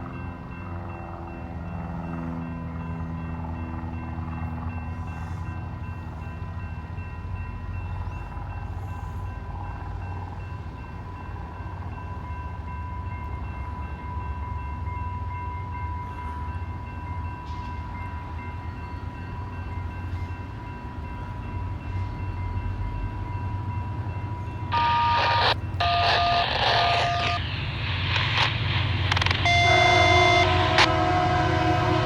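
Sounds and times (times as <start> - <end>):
train horn: 24.7 - 26.4, 29.2 - 32.0
steady high-pitched tone: 24.7 - 32.0.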